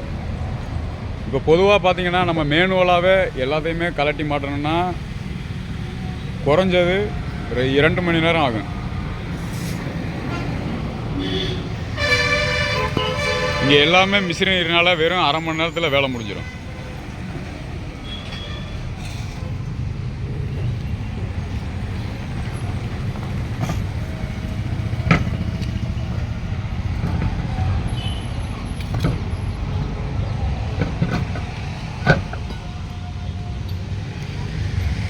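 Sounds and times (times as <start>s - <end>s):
metal knocks and clanks: 30.7s - 32.8s.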